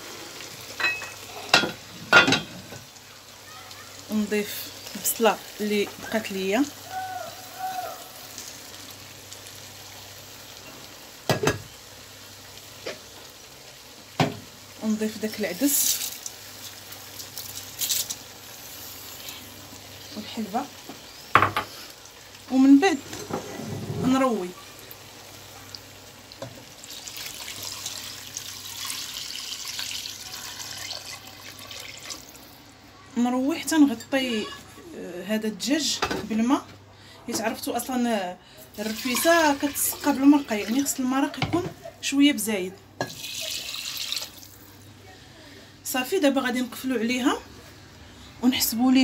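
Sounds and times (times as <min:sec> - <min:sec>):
food sizzling in oil: 0:00.0 - 0:36.7, 0:37.3 - 0:45.0
water pouring into pot: 0:26.8 - 0:32.6, 0:38.7 - 0:41.0, 0:43.1 - 0:44.7.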